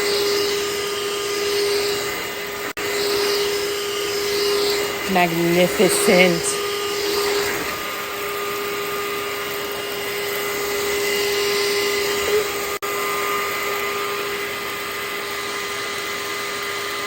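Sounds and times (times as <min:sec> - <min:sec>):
vacuum motor whine: 0:06.8 - 0:17.0.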